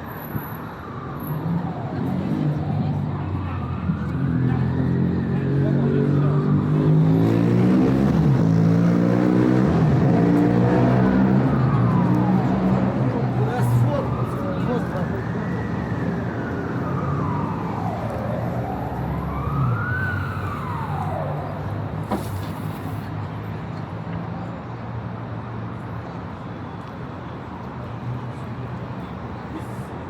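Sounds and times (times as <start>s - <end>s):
emergency siren wailing: 0.0s - 22.0s
city traffic rumble: 0.0s - 30.0s.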